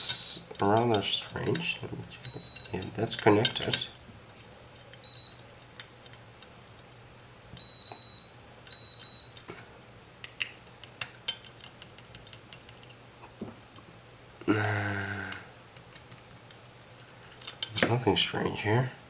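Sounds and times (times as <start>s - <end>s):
continuity tester beeping: 2.2s - 2.8s, 5.0s - 5.4s, 7.6s - 9.4s.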